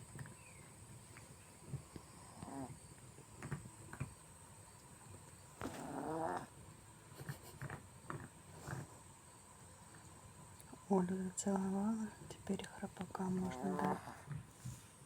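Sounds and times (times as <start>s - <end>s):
dog snoring: 1.6s - 4.2s, 5.6s - 9.1s, 13.2s - 14.8s
soft snuffles: 7.1s - 9.1s.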